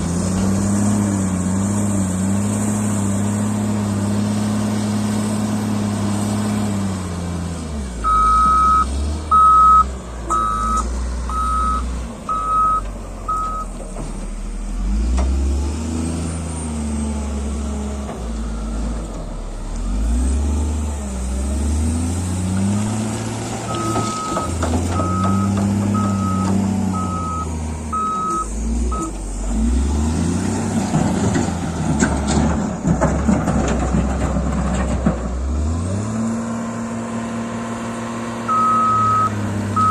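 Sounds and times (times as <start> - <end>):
diesel engine revving: 0.0 - 39.9
reversing alarm beeping: 8.0 - 13.7, 23.7 - 29.1, 38.5 - 39.9.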